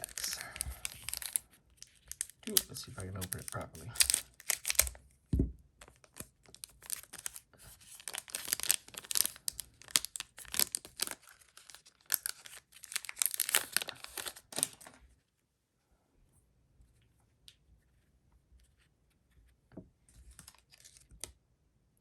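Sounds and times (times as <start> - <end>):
card pack wrapper tearing: 0.0 - 5.0, 6.0 - 15.0, 20.4 - 21.3.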